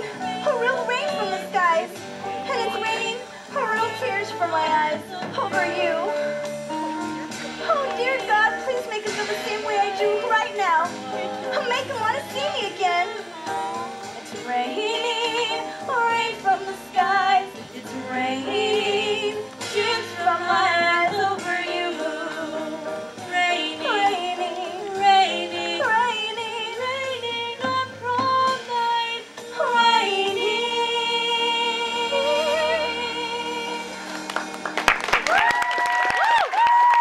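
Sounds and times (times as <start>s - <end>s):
woman singing with vibrato: 0.0s - 6.2s, 7.6s - 34.1s
musical accompaniment: 0.0s - 37.0s.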